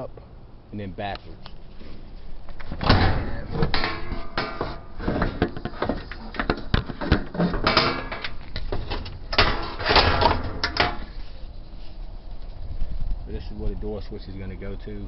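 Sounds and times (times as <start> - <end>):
washer panels clacking and scraping: 2.7 - 11.0.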